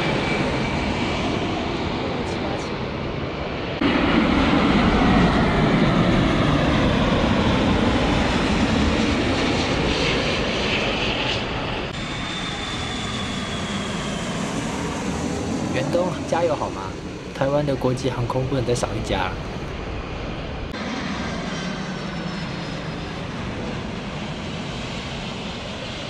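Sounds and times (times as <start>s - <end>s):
high engine whine: 0.0s - 26.0s
jet airliner passing low: 0.0s - 26.0s.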